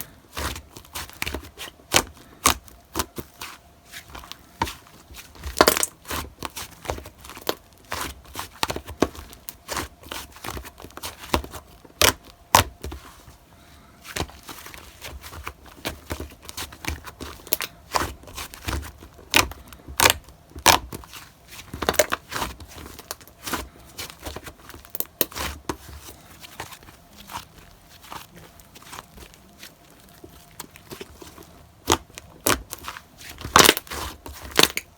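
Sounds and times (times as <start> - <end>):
slime clicking and crackling: 0.3 - 3.6, 4.2 - 12.9, 14.1 - 34.9.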